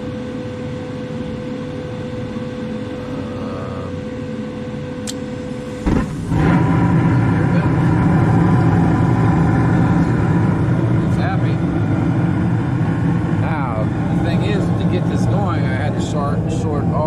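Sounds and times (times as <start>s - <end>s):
constant whine: 0.0s - 17.0s
furnace burning rumble: 0.0s - 17.0s
furnace fan hum: 0.0s - 17.0s
burner ignition thump: 5.1s - 16.2s.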